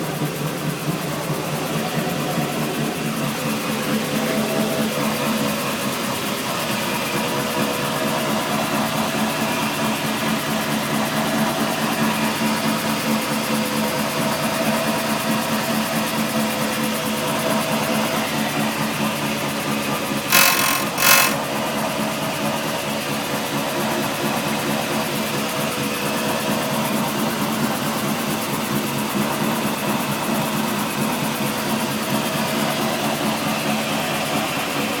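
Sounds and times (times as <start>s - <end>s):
sharp clicks: 20.3s - 21.4s.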